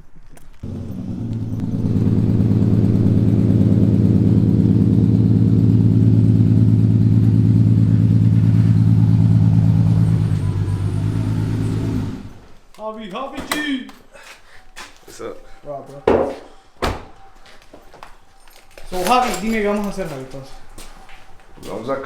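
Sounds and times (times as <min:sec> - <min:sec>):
car engine running: 0:00.6 - 0:12.5.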